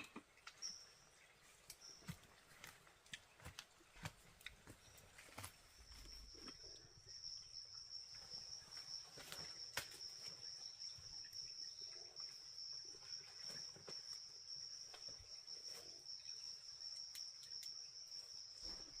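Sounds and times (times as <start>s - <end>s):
insects trilling: 4.7s - 19.0s.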